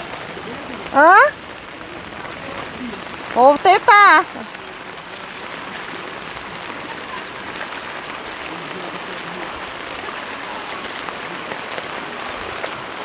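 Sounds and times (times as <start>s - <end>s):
heavy rain falling: 0.0s - 13.0s.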